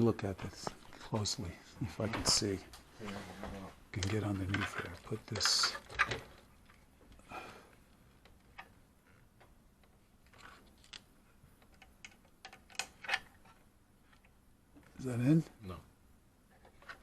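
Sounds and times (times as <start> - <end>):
clicks and scrapes of small parts: 4.0 - 6.9, 9.8 - 14.3.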